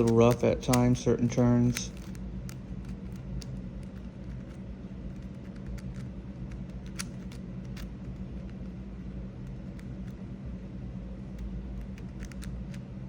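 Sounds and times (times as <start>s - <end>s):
puzzle cube clicking: 0.0s - 4.6s
steady low hum: 0.0s - 13.0s.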